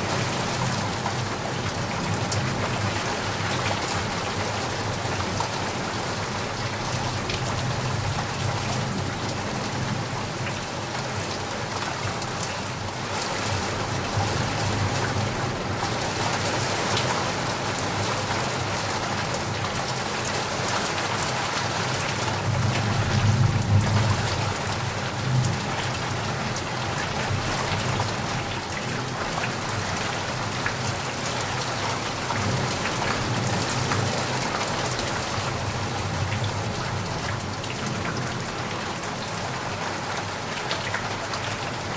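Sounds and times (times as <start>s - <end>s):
steady rain falling: 0.0s - 41.9s
low rumble of thunder: 22.4s - 26.5s.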